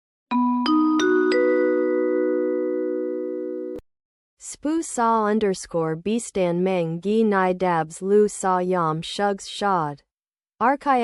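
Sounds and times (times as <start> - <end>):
electronic chime jingle: 0.3 - 3.8.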